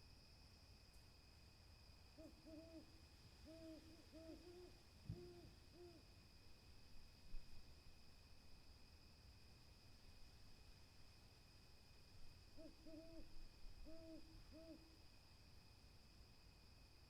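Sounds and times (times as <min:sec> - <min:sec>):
owl hooting: 0:02.2 - 0:06.0, 0:12.6 - 0:14.9.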